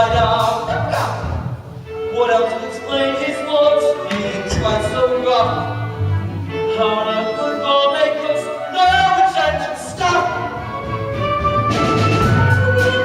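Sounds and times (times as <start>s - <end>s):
voices singing show tune: 0.0s - 6.0s, 6.6s - 11.0s
instrumental accompaniment: 0.0s - 13.0s.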